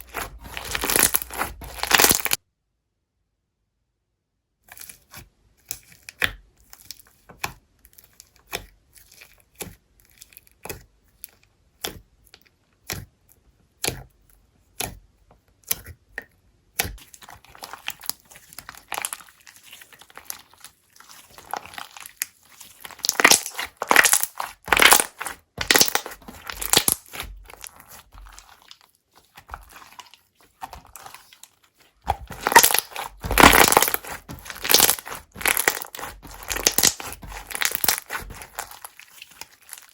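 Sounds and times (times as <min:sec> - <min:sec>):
slime popping and squishing: 0:00.0 - 0:02.4, 0:16.8 - 0:39.9.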